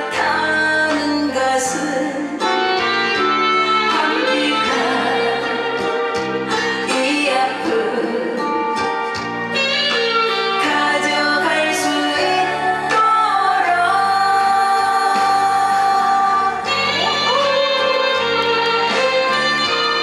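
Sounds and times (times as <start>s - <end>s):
amplified instrumental accompaniment: 0.0s - 20.0s
woman singing pop song: 0.0s - 20.0s.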